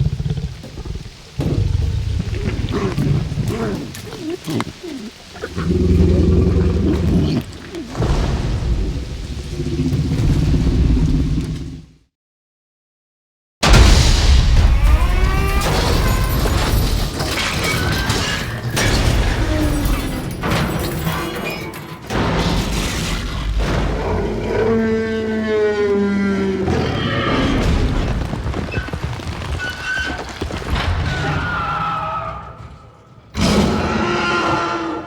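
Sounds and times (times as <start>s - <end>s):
low booming rumbles: 0.0s - 4.1s, 7.8s - 11.4s, 13.6s - 17.3s
dinosaur bellows and moans: 0.0s - 8.0s.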